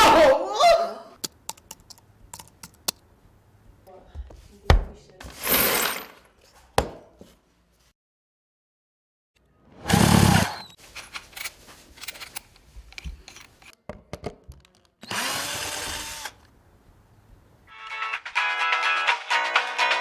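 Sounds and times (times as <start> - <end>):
handling clicks and knocks: 10.8 - 15.0
electric drill running: 15.0 - 16.5.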